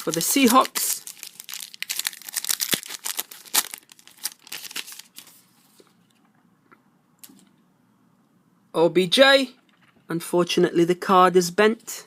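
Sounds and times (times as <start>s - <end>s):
foil wrapper crinkling and tearing: 0.0s - 5.3s.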